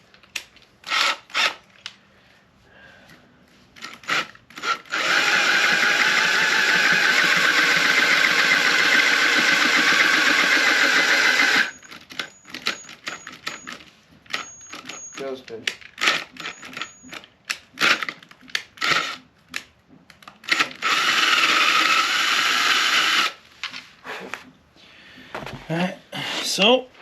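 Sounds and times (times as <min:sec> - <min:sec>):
power drill boring into metal: 0:03.8 - 0:13.6, 0:20.5 - 0:23.4.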